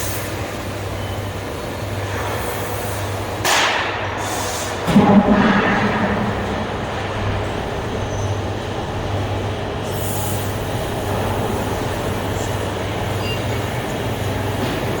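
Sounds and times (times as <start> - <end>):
heavy machinery humming: 4.7 - 15.0.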